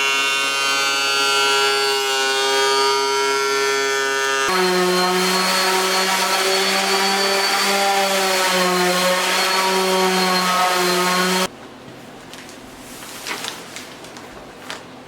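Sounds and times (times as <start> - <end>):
board being cut: 0.0 - 11.5
woodworking machine motor hum: 0.1 - 11.5.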